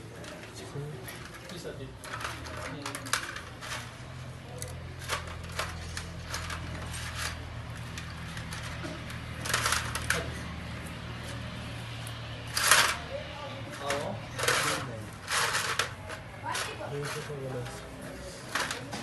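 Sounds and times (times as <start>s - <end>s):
metallic clicks and clatter: 4.6s - 10.3s.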